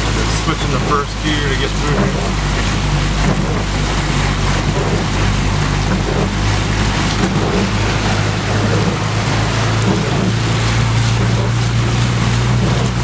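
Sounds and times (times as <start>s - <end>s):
engine running: 0.0s - 13.0s
water rushing and splashing: 0.0s - 13.0s.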